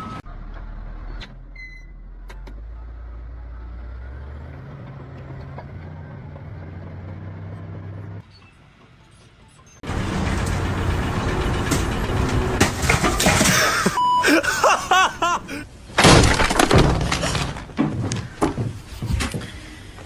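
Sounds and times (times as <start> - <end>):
loud crashing and breaking: 16.0 - 18.8.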